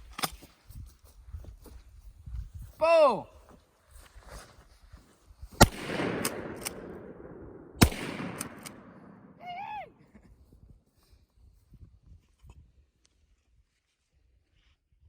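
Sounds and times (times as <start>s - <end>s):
short vocal cry: 2.8s - 3.3s, 9.4s - 9.9s
shotgun shots with echo: 5.6s - 9.4s.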